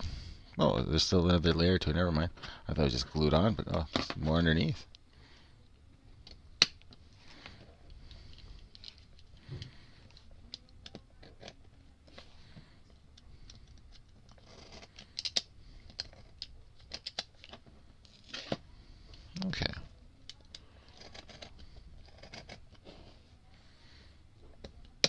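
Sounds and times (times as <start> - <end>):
fingernails scratching cardboard card: 14.3 - 15.2, 20.8 - 22.8.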